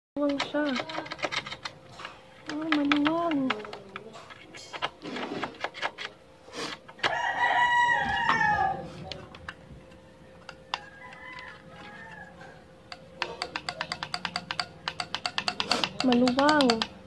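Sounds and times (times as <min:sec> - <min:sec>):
rooster crowing: 0:07.0 - 0:09.0, 0:10.1 - 0:12.7.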